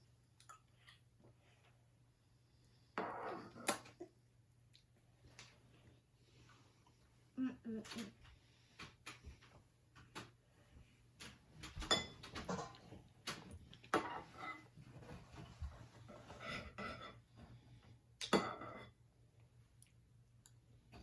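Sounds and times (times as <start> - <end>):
spoons clinking on dishes: 11.6 - 12.8, 18.2 - 19.0.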